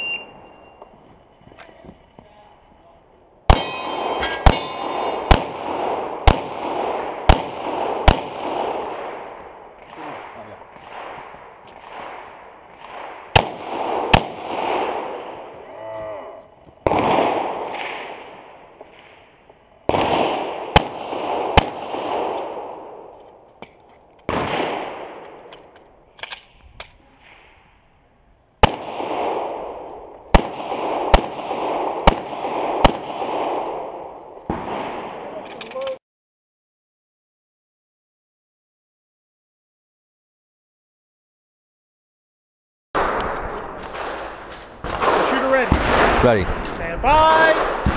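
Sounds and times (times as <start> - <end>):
pistol shots: 3.5 - 11.2, 12.8 - 15.5, 19.9 - 23.1, 28.6 - 35.3.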